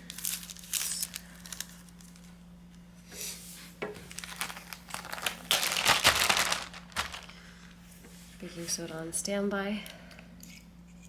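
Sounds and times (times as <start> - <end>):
paper crinkling and rustling: 0.0 - 2.4, 4.0 - 7.5.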